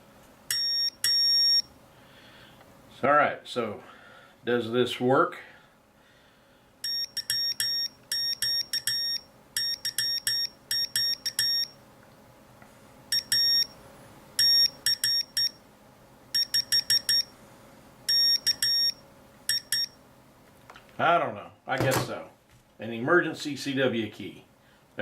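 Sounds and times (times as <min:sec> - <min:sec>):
high-pitched morse code beeps: 0:00.5 - 0:01.7, 0:06.8 - 0:11.8, 0:13.1 - 0:13.8, 0:14.4 - 0:15.6, 0:16.4 - 0:17.3, 0:18.1 - 0:20.0.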